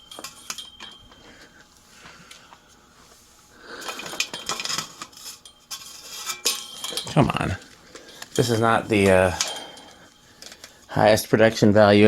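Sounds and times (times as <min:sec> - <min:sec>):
small hard objects clinking: 0:03.7 - 0:10.7.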